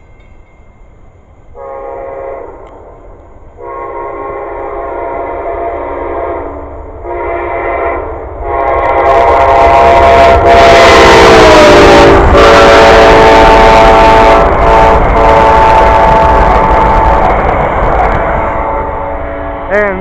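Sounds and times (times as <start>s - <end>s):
passing train rumble: 0.0s - 20.0s
train horn blasts: 1.6s - 3.0s, 3.6s - 20.0s.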